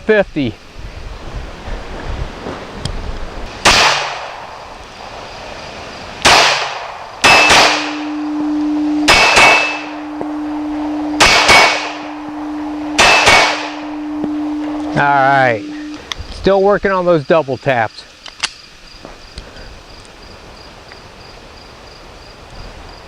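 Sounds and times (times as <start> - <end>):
pistol shots: 3.6 - 4.5, 6.2 - 8.1, 9.1 - 9.9, 11.2 - 12.1, 13.0 - 13.8
clanging ring: 7.2 - 16.0.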